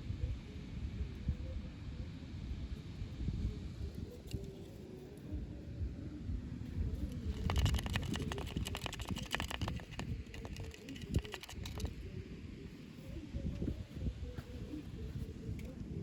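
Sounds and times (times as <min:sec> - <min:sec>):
low rustling handling noise: 0:07.0 - 0:12.2.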